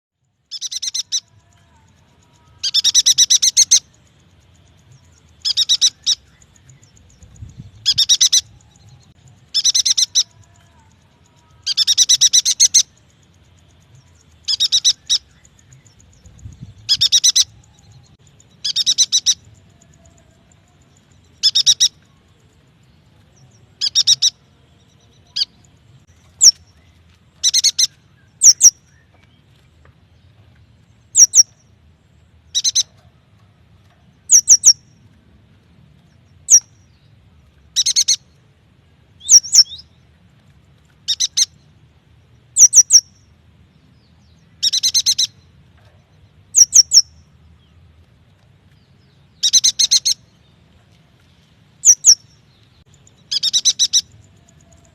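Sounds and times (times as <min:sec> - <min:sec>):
bird chattering trills: 0:00.5 - 0:04.0, 0:05.3 - 0:08.6, 0:09.4 - 0:10.8, 0:11.5 - 0:13.0, 0:14.4 - 0:17.8, 0:18.6 - 0:20.0, 0:21.4 - 0:22.0, 0:23.8 - 0:24.4, 0:27.4 - 0:28.8, 0:31.1 - 0:31.5, 0:32.5 - 0:33.1, 0:34.3 - 0:34.8, 0:39.2 - 0:39.8, 0:42.6 - 0:43.1, 0:46.5 - 0:47.1, 0:49.4 - 0:50.2, 0:51.8 - 0:52.2, 0:53.3 - 0:54.9.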